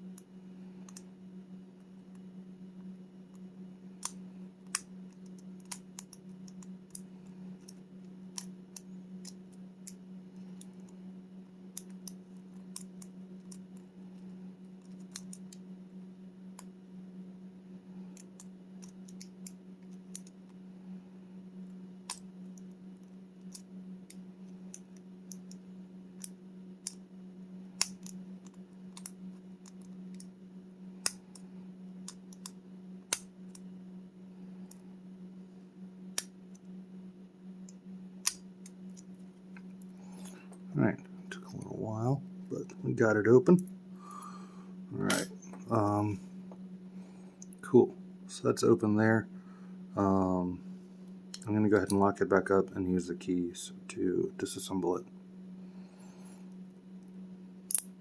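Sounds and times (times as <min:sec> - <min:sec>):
steady low hum: 0:00.0 - 0:58.0
lock pick metallic clicks: 0:57.7 - 0:57.9.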